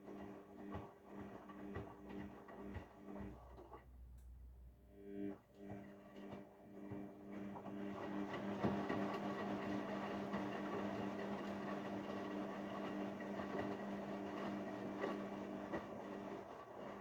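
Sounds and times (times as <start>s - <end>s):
washing machine motor hum: 0.0s - 17.0s.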